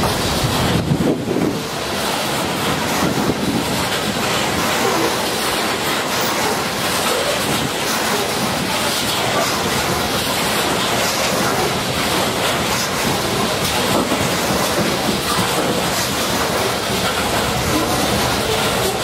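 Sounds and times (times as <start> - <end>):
train cars rushing rumble: 0.0 - 19.0
wheels clattering over rail joints: 0.0 - 19.0.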